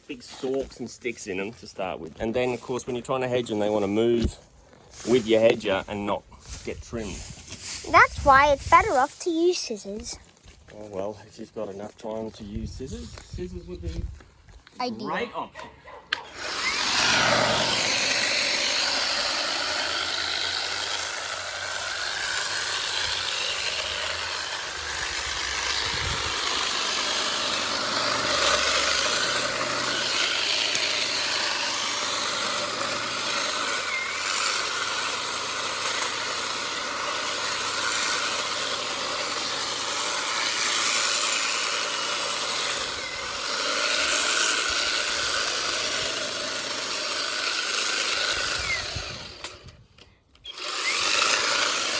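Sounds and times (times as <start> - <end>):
blades cutting thick stalks: 0.0 - 13.4, 16.1 - 49.8, 50.4 - 51.9
electric hedge trimmer whine: 16.1 - 51.9.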